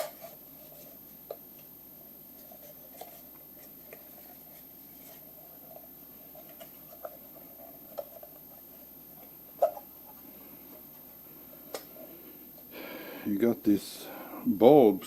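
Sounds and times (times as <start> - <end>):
faint room hum: 0.0 - 15.0.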